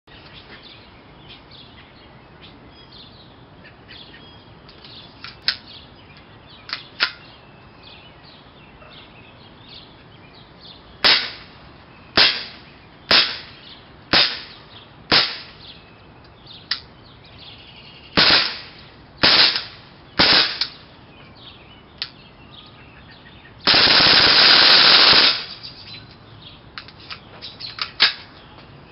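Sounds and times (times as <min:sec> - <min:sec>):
airsoft pistol shots: 0:11.0 - 0:11.5, 0:12.2 - 0:15.6, 0:18.2 - 0:20.8, 0:23.7 - 0:25.6.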